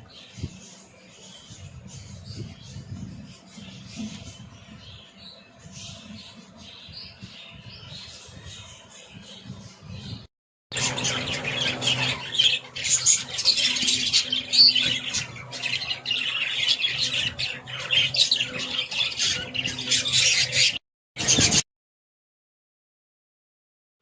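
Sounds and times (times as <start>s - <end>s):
budgerigars chattering: 10.8s - 21.5s.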